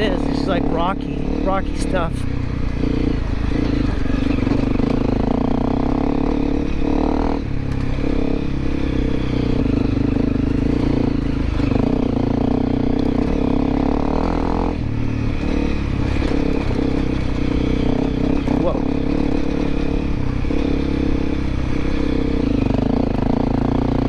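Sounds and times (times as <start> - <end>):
motorcycle engine running: 0.0 - 24.0.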